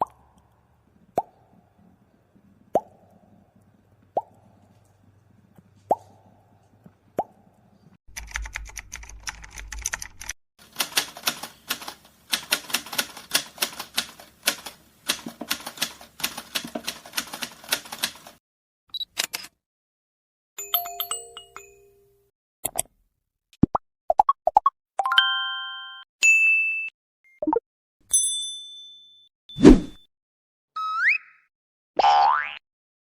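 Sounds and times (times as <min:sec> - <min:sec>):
rapid keyboard typing: 0:08.1 - 0:18.4
upward-sliding pops: 0:29.6 - 0:30.0.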